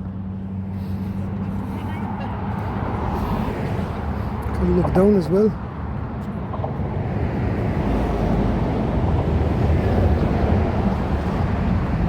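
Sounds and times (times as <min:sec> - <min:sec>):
wind buffeting microphone: 0:05.6 - 0:12.0.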